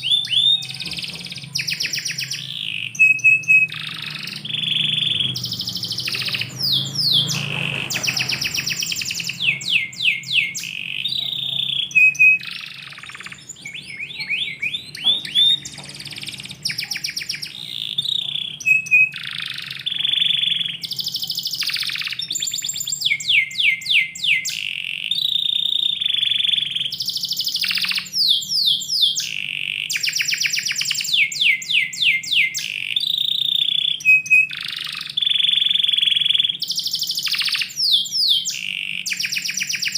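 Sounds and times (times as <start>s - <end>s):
canary singing: 0.0s - 39.9s.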